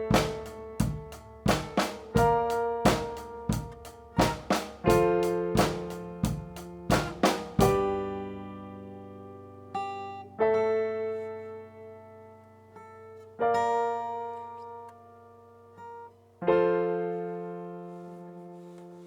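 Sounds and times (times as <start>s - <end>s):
slow keyboard chords: 0.0s - 9.7s.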